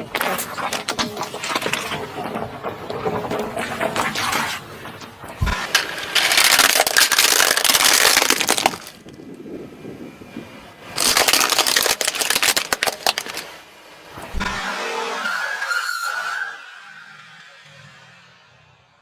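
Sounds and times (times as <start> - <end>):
crunchy objects being crushed: 5.4 - 9.3, 10.8 - 13.6.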